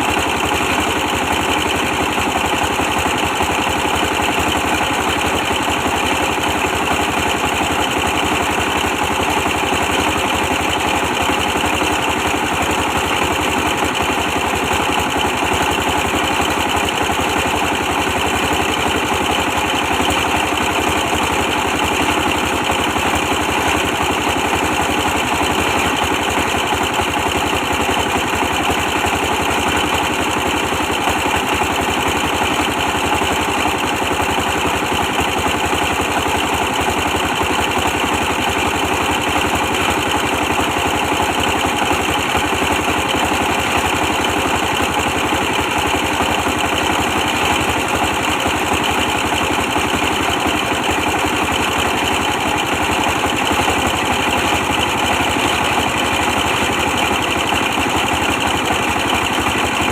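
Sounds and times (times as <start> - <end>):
diesel engine running steadily: 0.0 - 59.9.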